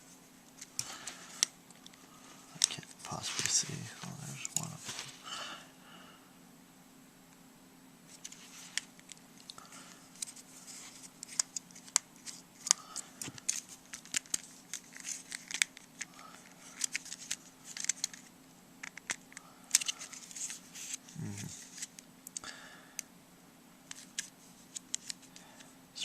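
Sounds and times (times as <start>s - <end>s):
faint low hum: 0.0s - 26.0s
scratching and scraping: 0.6s - 5.2s
plastic parts clicking and snapping: 11.2s - 20.6s, 23.9s - 25.2s.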